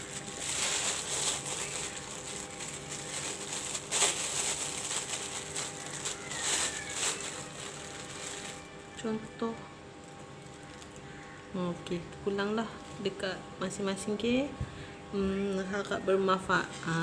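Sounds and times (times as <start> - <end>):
rustling and handling noises: 0.0 - 11.4
faint steady hum: 0.0 - 17.0.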